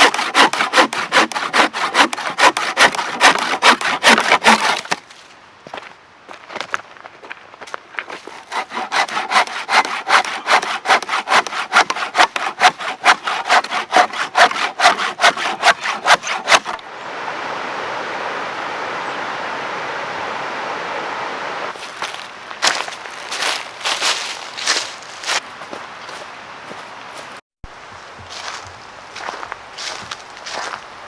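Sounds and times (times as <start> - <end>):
saw cutting wood: 0.0 - 5.0, 8.2 - 16.8.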